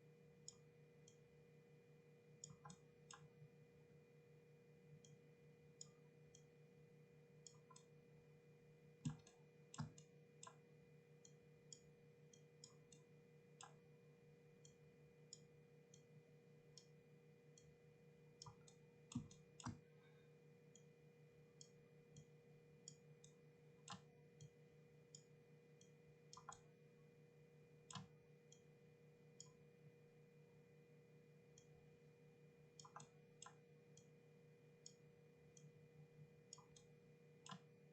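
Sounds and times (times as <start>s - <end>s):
low electrical hum: 0.0s - 37.9s
mouse and keyboard clicks: 9.0s - 10.6s, 18.4s - 19.8s, 26.4s - 26.7s, 32.8s - 34.1s.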